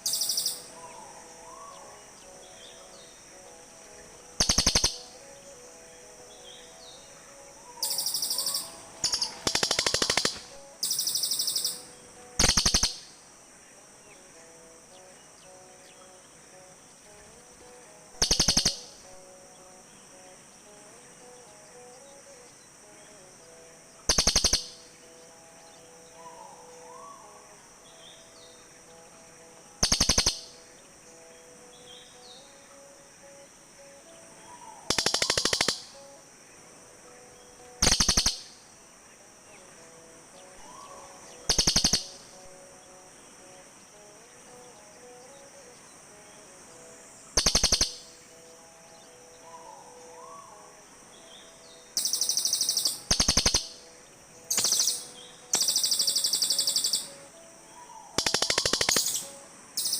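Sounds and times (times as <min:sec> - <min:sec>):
bird trilling: 0:00.0 - 0:03.3, 0:04.3 - 0:05.2, 0:06.4 - 0:13.2, 0:18.1 - 0:19.2, 0:24.1 - 0:24.9, 0:29.8 - 0:30.6, 0:34.4 - 0:36.1, 0:37.6 - 0:38.6, 0:40.5 - 0:42.5, 0:47.4 - 0:48.2, 0:52.0 - 0:59.9
faint chirps: 0:00.0 - 0:59.9
steady high hiss: 0:00.0 - 0:59.9.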